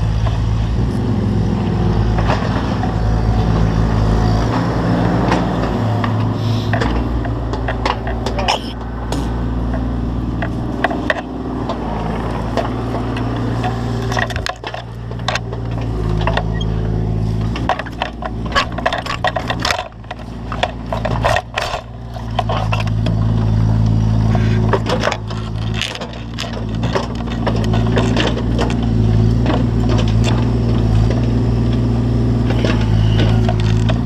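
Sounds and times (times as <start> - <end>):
excavator engine running: 0.0 - 34.0
wood splintering and breaking: 24.4 - 31.5.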